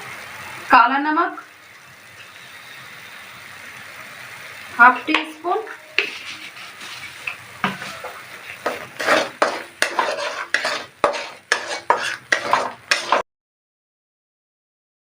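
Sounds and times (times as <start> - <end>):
light sizzle: 0.0 - 13.2
spoon stirring and scraping pan: 5.0 - 13.2.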